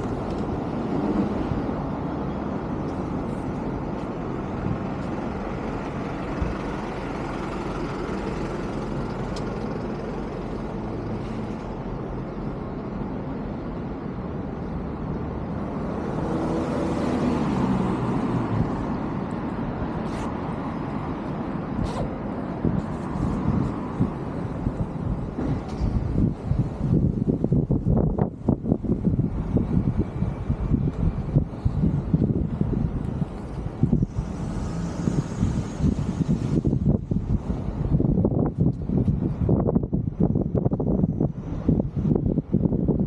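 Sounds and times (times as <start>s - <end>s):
vehicle passing by: 0.0s - 3.6s, 14.7s - 27.0s, 29.5s - 38.1s
road traffic hum: 0.0s - 43.0s.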